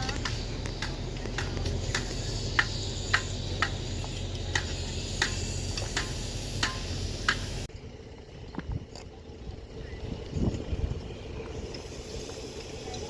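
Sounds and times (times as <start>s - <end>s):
regular sharp ticking: 0.0s - 8.4s
machine engine running: 0.0s - 13.0s.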